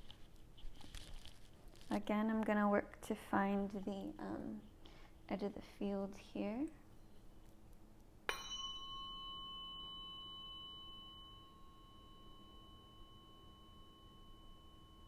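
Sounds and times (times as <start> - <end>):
tuning fork ringing: 8.3 - 15.0.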